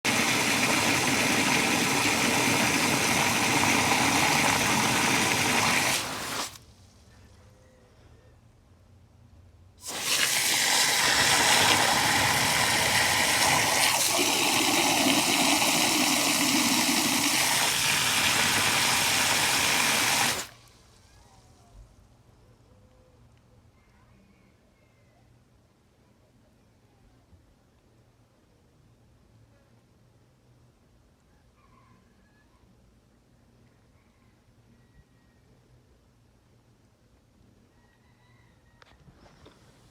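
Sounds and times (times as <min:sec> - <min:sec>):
water gushing: 0:00.0 - 0:06.6, 0:09.8 - 0:20.7.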